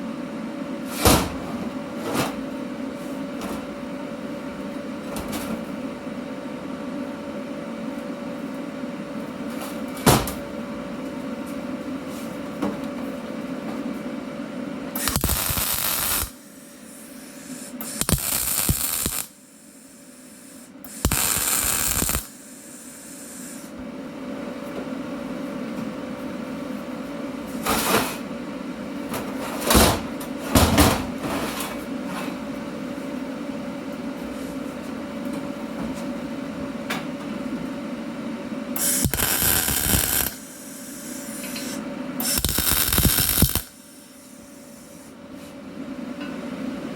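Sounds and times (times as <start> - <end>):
machine hum: 13.4 - 25.5, 37.2 - 45.0
welding arc crackle: 15.0 - 16.4, 17.8 - 19.4, 20.9 - 22.4, 38.8 - 43.8.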